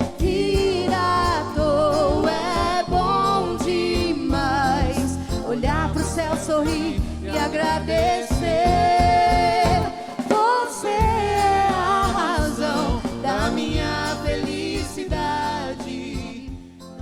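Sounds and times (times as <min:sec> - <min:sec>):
bass notes: 0:00.0 - 0:10.0, 0:11.0 - 0:17.0
singers with pop band: 0:00.0 - 0:17.0.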